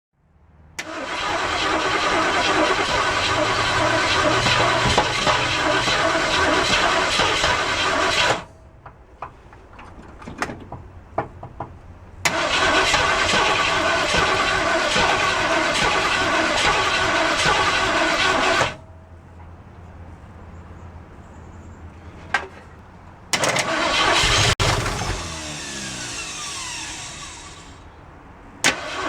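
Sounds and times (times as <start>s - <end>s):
car engine cranking and sputtering: 0.8s - 19.4s, 23.3s - 29.0s
light clicks and knocks: 8.8s - 11.9s.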